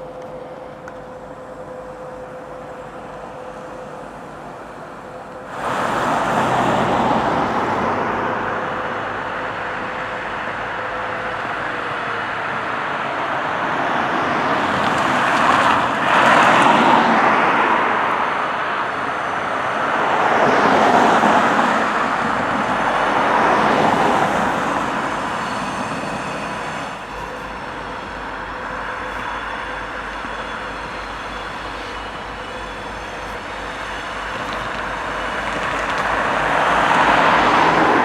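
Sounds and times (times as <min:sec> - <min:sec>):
vehicles passing: 0:05.4 - 0:28.8, 0:32.1 - 0:38.0.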